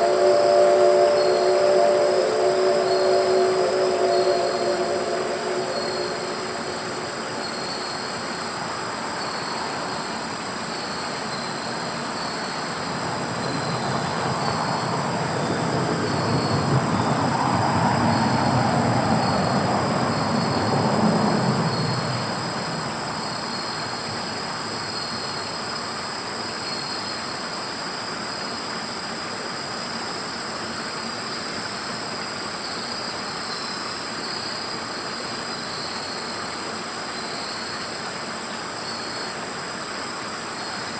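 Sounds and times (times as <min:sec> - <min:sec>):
steam train rumbling past: 0:00.0 - 0:08.8, 0:11.7 - 0:25.4
insects chirring: 0:00.0 - 0:25.8.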